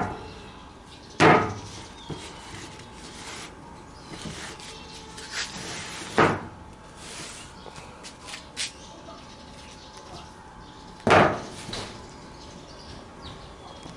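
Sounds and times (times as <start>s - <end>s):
loud short knocks: 1.2s - 2.2s, 11.0s - 11.9s.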